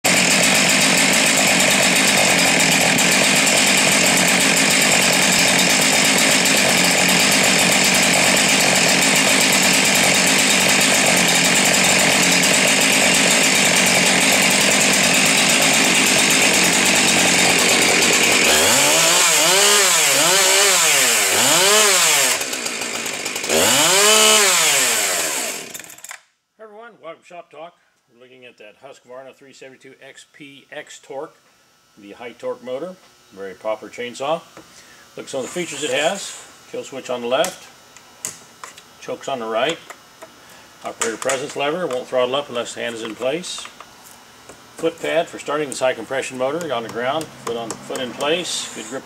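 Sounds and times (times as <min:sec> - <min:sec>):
chainsaw revving: 0:00.0 - 0:26.2, 0:35.4 - 0:36.4, 0:44.8 - 0:49.0.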